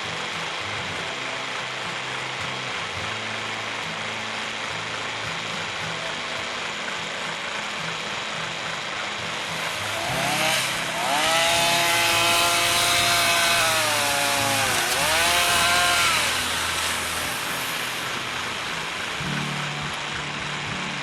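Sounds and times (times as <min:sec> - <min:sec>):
low engine drone idling: 0:00.0 - 0:21.0
chainsaw cutting wood: 0:06.8 - 0:21.0.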